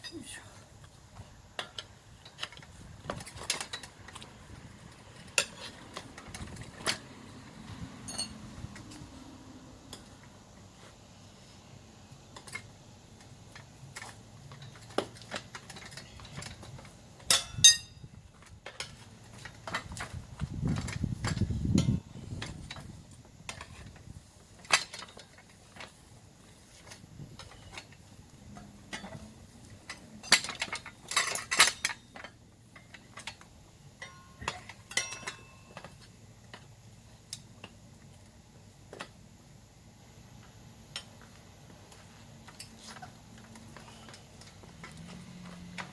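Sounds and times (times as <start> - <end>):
metal hand tools clanking: 1.6 - 7.4, 8.0 - 9.1, 14.5 - 23.9, 28.8 - 33.4, 34.0 - 36.0.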